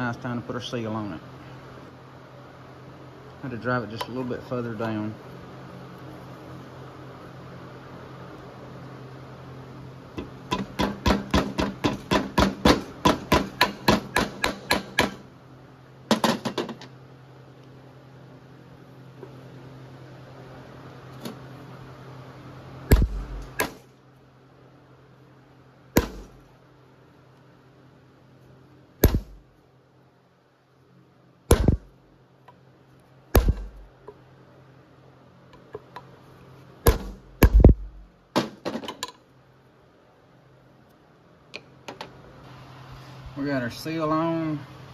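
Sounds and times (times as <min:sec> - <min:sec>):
hammer striking metal: 0:10.5 - 0:15.2, 0:26.0 - 0:26.3.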